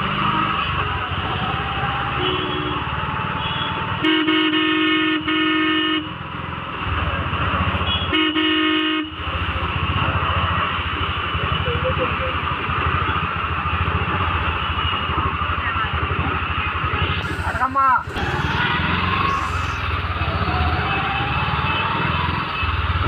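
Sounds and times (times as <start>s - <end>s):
traffic: 0.0s - 23.0s
vehicle horn honking: 2.2s - 2.8s, 3.4s - 6.1s, 7.9s - 9.1s.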